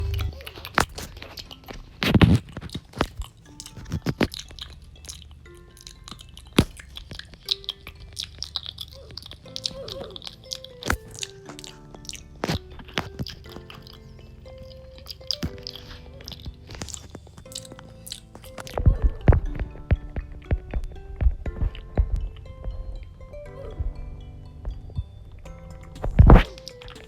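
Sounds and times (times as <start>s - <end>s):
soft background music: 0.0s - 27.0s
wet mouth clicks and smacks: 0.1s - 18.8s.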